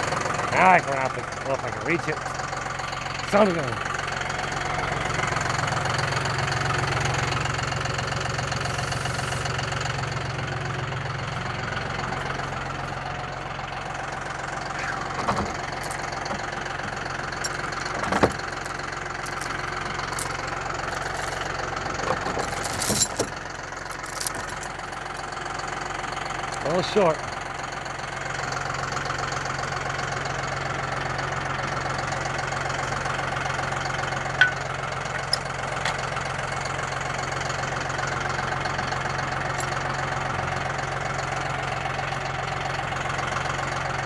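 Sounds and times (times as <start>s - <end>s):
engine running with knocking: 0.0s - 44.0s.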